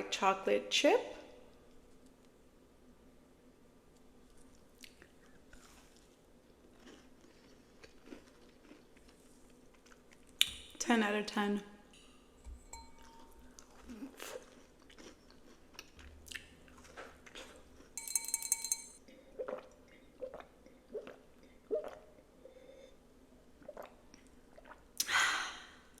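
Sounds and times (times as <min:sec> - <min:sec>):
person chewing a cookie: 0:04.0 - 0:10.5, 0:13.0 - 0:18.0
wet mouth clicks: 0:19.4 - 0:22.2.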